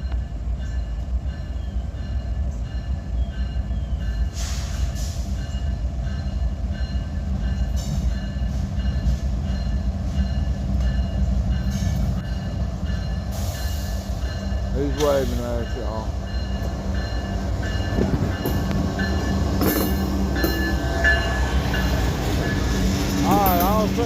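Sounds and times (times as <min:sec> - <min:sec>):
train engine rumble: 0:00.0 - 0:24.0
freight cars clanking: 0:13.0 - 0:24.0.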